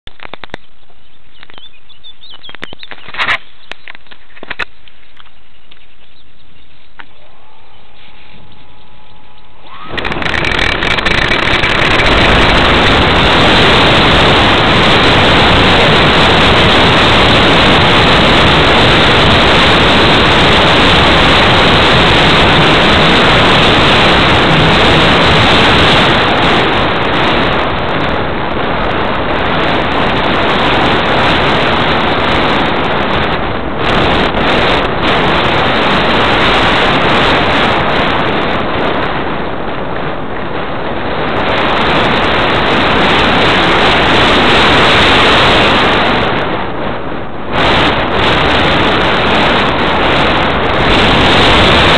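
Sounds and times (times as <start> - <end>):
wind rush over microphone: 0.0 - 51.9
faint rising whine: 6.3 - 13.3.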